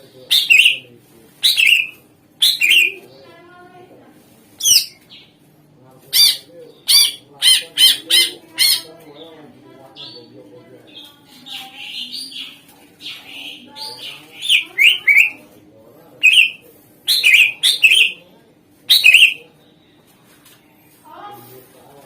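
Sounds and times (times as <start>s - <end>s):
bird singing whistled notes: 16.2s - 18.2s, 18.9s - 19.4s.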